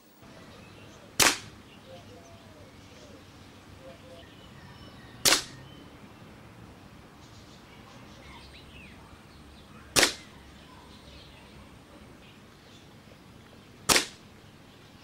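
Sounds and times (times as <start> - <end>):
air rifle shots: 1.2 - 1.6, 5.2 - 5.6, 9.9 - 10.4, 13.9 - 14.3.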